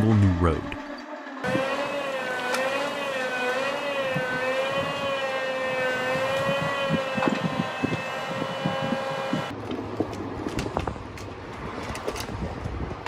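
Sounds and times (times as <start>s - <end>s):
motor whining at high speed: 0.7s - 9.5s.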